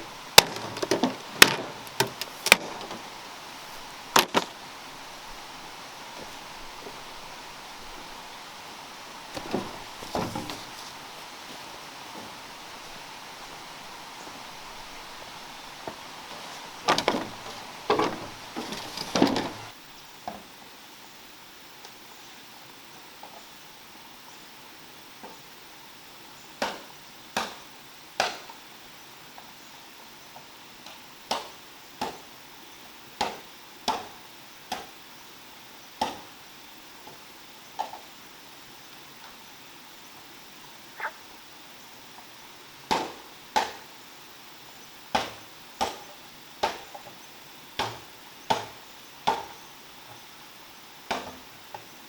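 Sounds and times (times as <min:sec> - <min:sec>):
chopping strikes on bamboo: 0:00.4 - 0:03.0, 0:04.2 - 0:04.5, 0:26.6 - 0:27.6, 0:28.2 - 0:28.6, 0:31.3 - 0:32.2, 0:33.2 - 0:34.9, 0:36.0 - 0:36.3, 0:42.9 - 0:43.8, 0:45.1 - 0:46.9, 0:47.8 - 0:49.5, 0:51.1 - 0:51.4.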